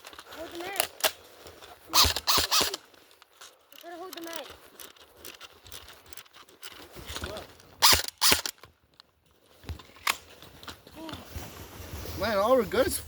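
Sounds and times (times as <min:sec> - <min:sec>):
airsoft gun clicks and rattles: 0:00.0 - 0:09.1, 0:09.7 - 0:10.7
airsoft gun sharp snaps: 0:07.8 - 0:08.5.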